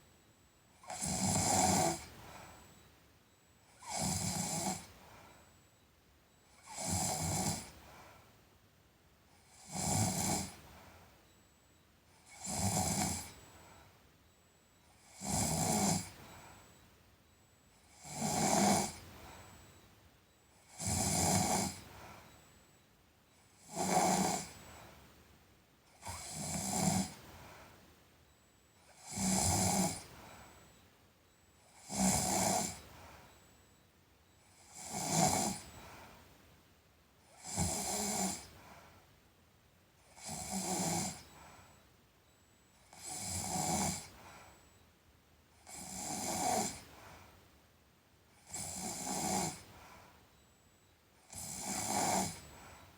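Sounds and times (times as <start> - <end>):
person snoring: 3.8 - 4.9, 9.5 - 10.6, 12.3 - 13.3, 15.1 - 16.2, 17.9 - 19.0, 20.7 - 21.8, 26.0 - 27.2, 29.0 - 30.1, 31.8 - 32.8, 37.4 - 38.5, 48.5 - 49.6, 51.3 - 52.4.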